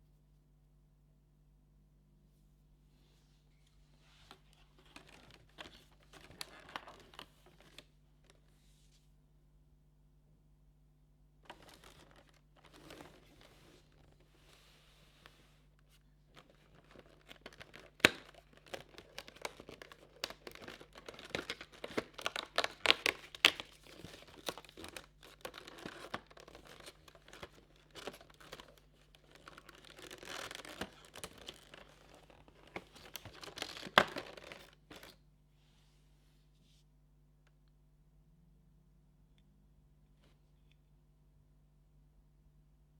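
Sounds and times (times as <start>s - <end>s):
wrapping crinkling and tearing: 11.5s - 14.2s, 16.3s - 35.2s.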